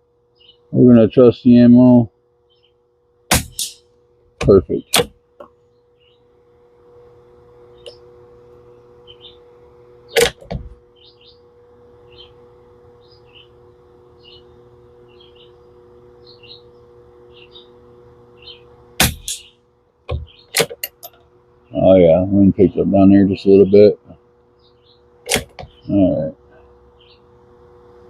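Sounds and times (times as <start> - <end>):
faint steady hum: 0.0 - 28.0
birds chirping: 0.2 - 3.0, 4.4 - 27.6
sharp metallic clicks: 25.3 - 25.7.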